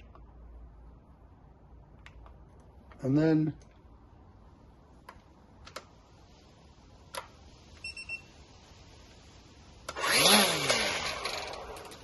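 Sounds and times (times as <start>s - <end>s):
short beeps: 7.8s - 8.3s
strimmer motor spinning: 9.9s - 12.0s.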